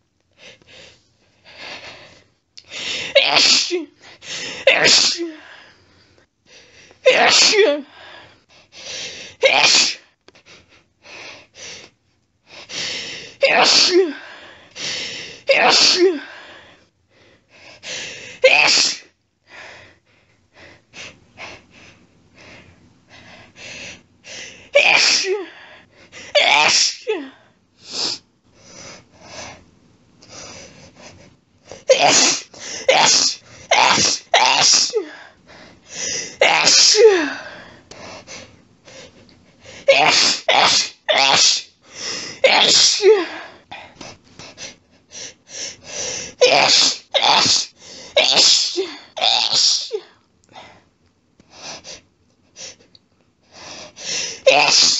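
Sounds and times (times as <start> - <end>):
woman sneezing: 3.1 - 4.0, 4.6 - 5.4, 7.0 - 7.9, 9.4 - 10.1, 13.4 - 14.2, 15.5 - 16.3, 18.4 - 19.1, 24.8 - 25.5, 26.4 - 27.4, 31.8 - 35.2, 36.4 - 37.4, 39.9 - 41.8, 42.4 - 43.4, 46.4 - 50.2, 54.4 - 54.9.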